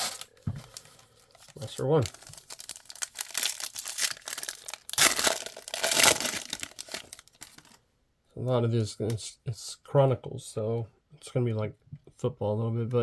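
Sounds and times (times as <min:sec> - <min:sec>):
plastic wrapping tearing and crinkling: 0:00.0 - 0:07.8.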